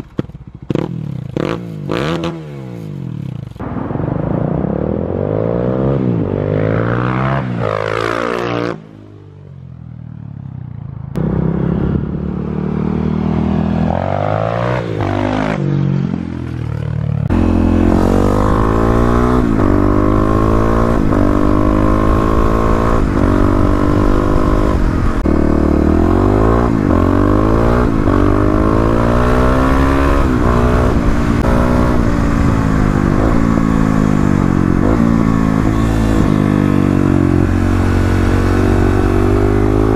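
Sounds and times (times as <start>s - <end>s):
motorcycle engine revving: 0.0s - 3.8s, 4.6s - 39.9s
rushing noise: 3.6s - 7.9s.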